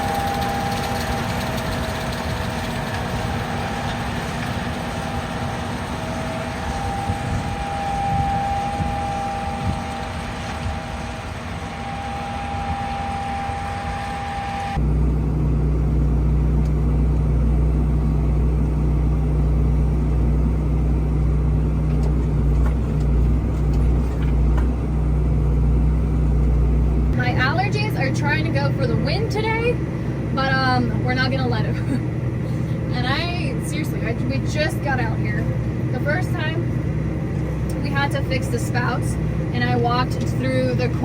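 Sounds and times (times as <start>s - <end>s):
tractor engine running: 0.0s - 41.0s
whine: 0.0s - 41.0s.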